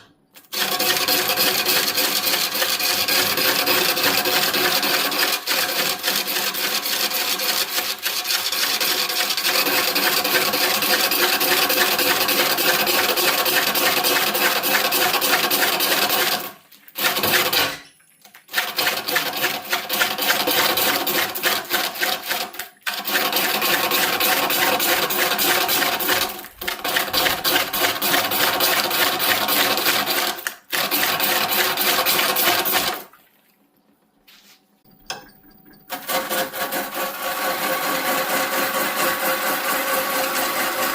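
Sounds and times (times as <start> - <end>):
power tool rasping wood: 0.5 - 17.8, 35.9 - 40.9.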